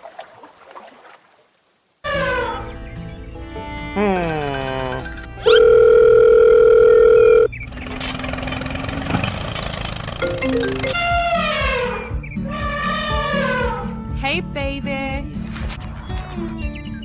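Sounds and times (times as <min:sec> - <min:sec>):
background music: 0:02.1 - 0:06.7, 0:10.2 - 0:17.0
loud steady beep: 0:04.4 - 0:07.5.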